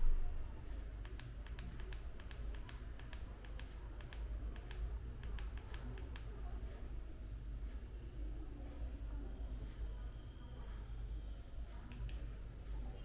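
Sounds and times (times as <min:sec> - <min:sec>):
faint low hum: 0:00.0 - 0:13.0
light sharp clicks: 0:01.0 - 0:06.4, 0:11.9 - 0:12.3.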